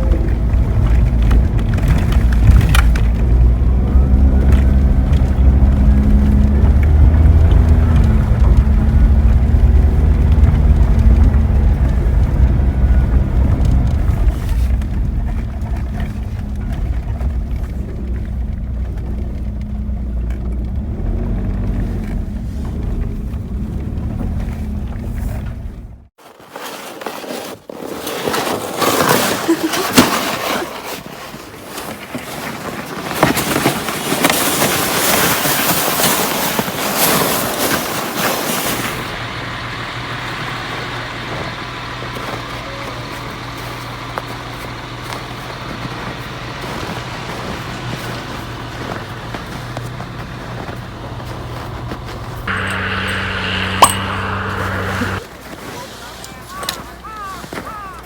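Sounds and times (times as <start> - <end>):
car engine and tyre drone: 0.0 - 26.1, 38.7 - 55.2
crackly rustling: 0.0 - 57.7.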